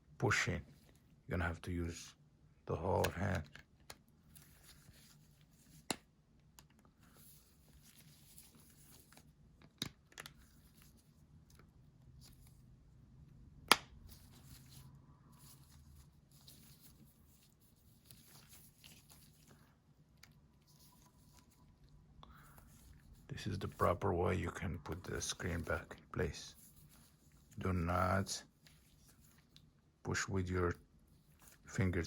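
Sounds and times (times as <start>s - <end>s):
handling rustle: 6.6s - 12.7s, 14.0s - 29.8s.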